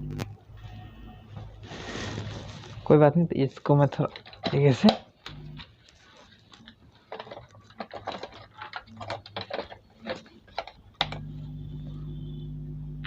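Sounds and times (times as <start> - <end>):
amplifier low hum: 0.0 - 1.6, 5.3 - 5.6, 11.0 - 13.0.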